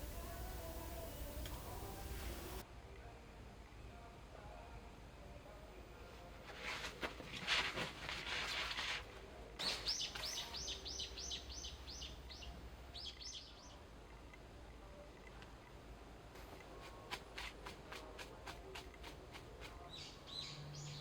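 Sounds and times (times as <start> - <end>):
rustling hiss with clicks: 0.0 - 2.6, 15.2 - 19.9
small bird chirping: 9.6 - 13.8, 19.8 - 21.0.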